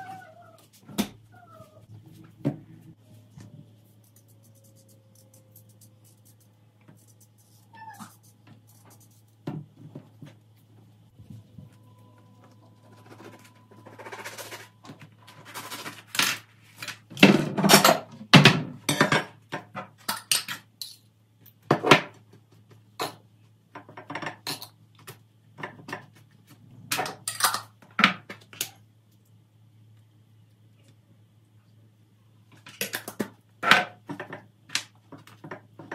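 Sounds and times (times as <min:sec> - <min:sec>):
faint low hum: 0:00.0 - 0:16.9.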